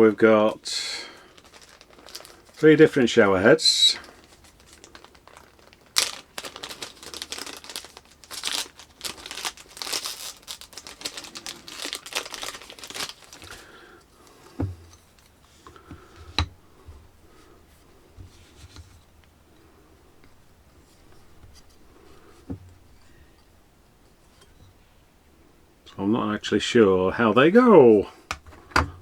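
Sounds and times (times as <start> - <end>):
packaging crinkling and tearing: 1.0 - 3.2, 4.0 - 13.8.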